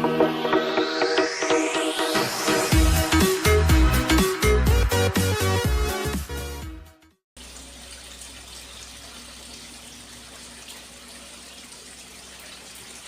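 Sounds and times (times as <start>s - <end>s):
running water rushing: 7.4s - 13.0s.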